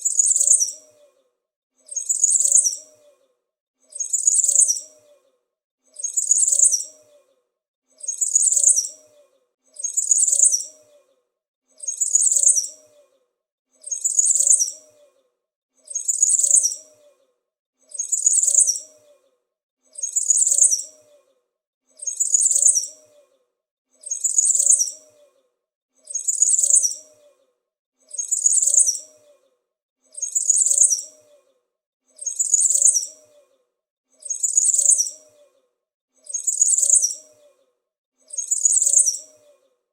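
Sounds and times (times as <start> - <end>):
small bird chirping: 0.0 - 1.2, 1.9 - 3.3, 3.9 - 5.3, 6.0 - 7.4, 8.0 - 11.1, 11.8 - 13.2, 13.8 - 15.2, 15.8 - 17.2, 17.9 - 19.3, 19.9 - 21.3, 21.9 - 23.4, 24.0 - 25.4, 26.0 - 27.4, 28.0 - 29.5, 30.1 - 31.5, 32.1 - 33.6, 34.2 - 35.6, 36.2 - 37.6, 38.2 - 39.7.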